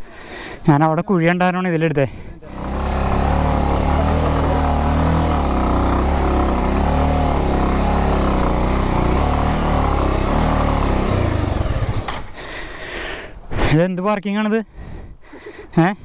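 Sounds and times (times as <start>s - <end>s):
motorcycle engine revving: 2.4s - 12.6s.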